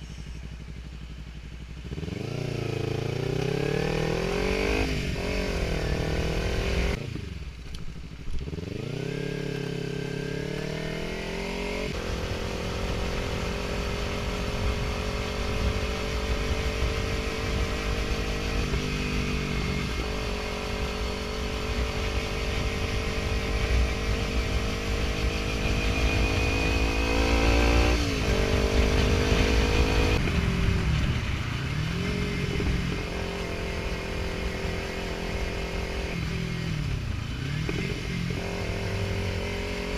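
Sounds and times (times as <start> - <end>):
motorcycle engine revving through gears: 0.0 - 39.9.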